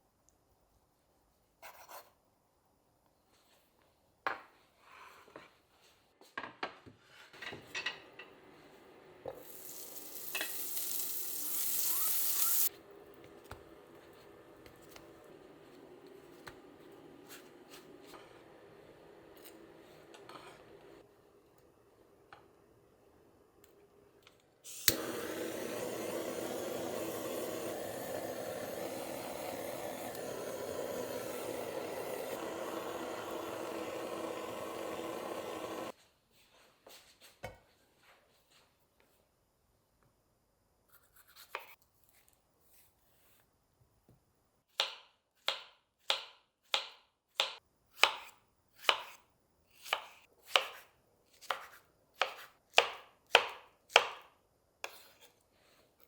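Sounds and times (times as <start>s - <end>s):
steady hiss: 9.3s - 12.7s, 24.6s - 35.9s
loud hiss: 9.4s - 12.7s, 24.7s - 35.9s.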